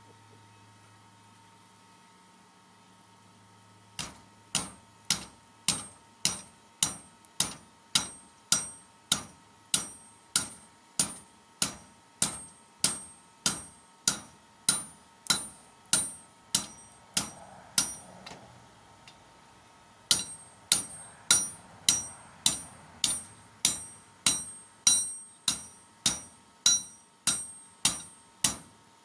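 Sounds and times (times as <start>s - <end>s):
hammer striking hot steel: 4.0s - 18.4s, 20.1s - 28.9s.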